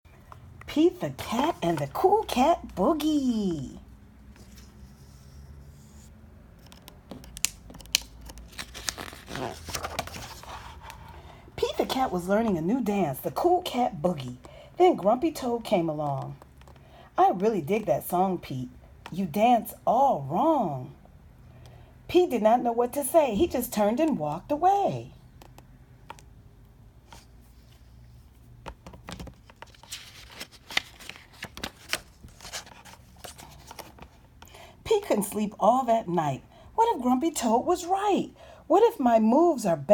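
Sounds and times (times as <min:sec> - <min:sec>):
paper pages rustling: 0:04.3 - 0:11.2, 0:27.1 - 0:34.3
sharp clicks and snaps: 0:06.6 - 0:08.5.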